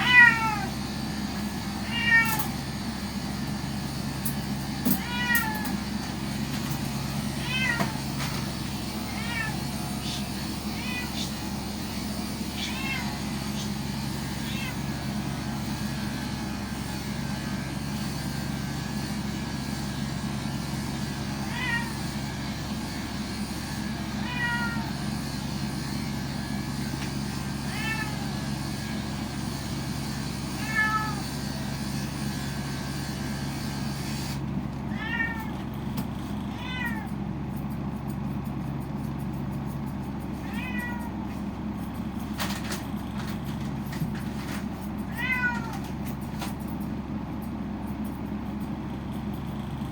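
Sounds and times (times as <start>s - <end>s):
cat meowing: 0.0s - 0.8s, 1.8s - 2.6s, 4.9s - 5.8s, 7.3s - 8.2s, 9.0s - 11.5s, 12.5s - 13.8s, 14.4s - 15.0s, 21.4s - 22.0s, 24.2s - 25.0s, 27.6s - 28.5s, 30.5s - 31.4s, 34.9s - 35.6s, 36.4s - 37.2s, 40.4s - 41.3s, 45.1s - 46.0s.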